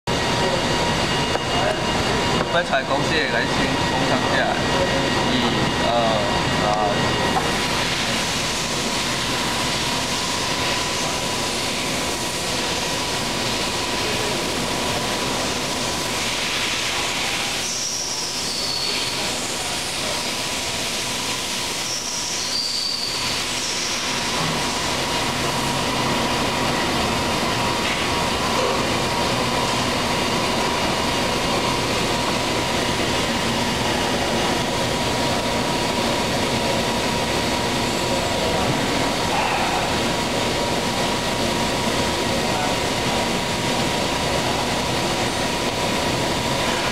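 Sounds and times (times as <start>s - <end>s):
grinder hiss and hum: 0.1s - 46.9s
high squeal falling in pitch: 17.6s - 19.4s, 21.8s - 24.2s.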